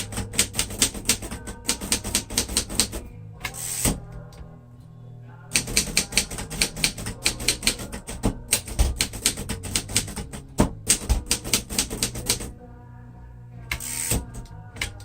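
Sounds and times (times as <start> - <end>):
manual typewriter typing: 0.0 - 4.0, 5.5 - 12.5.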